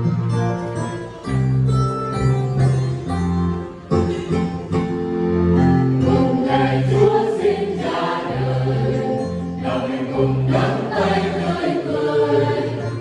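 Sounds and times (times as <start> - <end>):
choir singing: 6.0 - 13.0.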